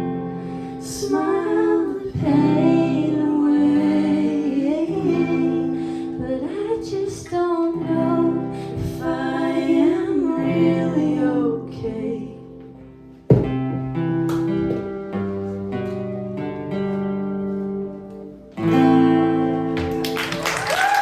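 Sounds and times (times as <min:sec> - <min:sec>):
acoustic guitar: 0:00.0 - 0:20.6
woman singing: 0:00.7 - 0:12.8.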